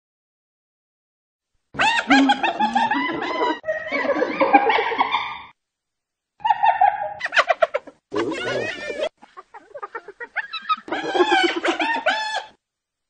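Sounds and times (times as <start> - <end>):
hyena giggling: 1.8 - 5.2, 8.1 - 12.2.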